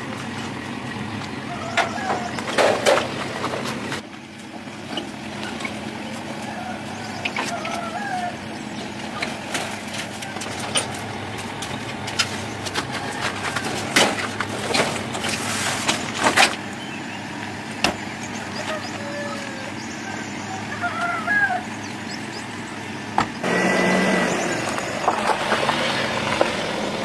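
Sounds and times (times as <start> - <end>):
van engine idling: 0.0 - 27.0.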